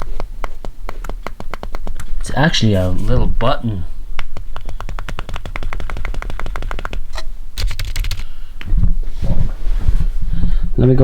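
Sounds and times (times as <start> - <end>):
keyboard keys clicking: 7.6 - 8.3.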